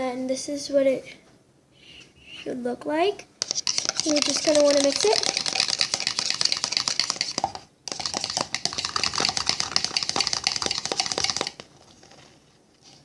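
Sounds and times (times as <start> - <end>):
fork stirring in a cup: 3.4 - 11.6.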